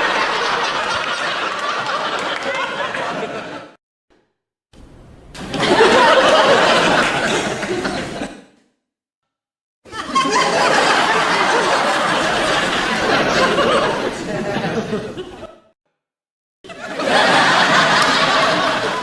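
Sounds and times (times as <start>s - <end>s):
studio audience laughing: 0.0s - 3.8s, 5.5s - 8.4s, 9.9s - 15.7s, 16.7s - 19.0s.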